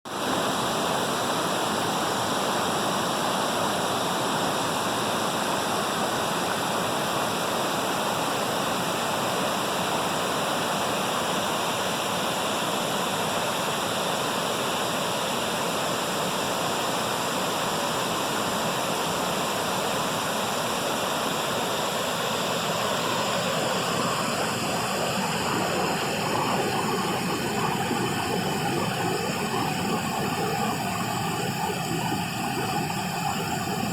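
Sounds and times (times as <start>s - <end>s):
waterfall rushing: 16.5s - 33.9s.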